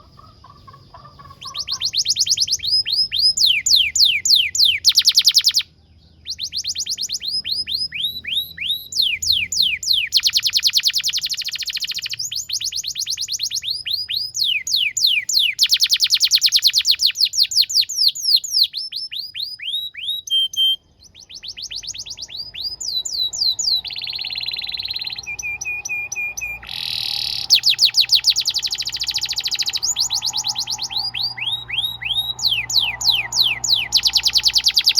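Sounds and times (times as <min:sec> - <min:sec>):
canary singing trills: 0:00.0 - 0:34.9
held whistled notes: 0:22.1 - 0:34.9.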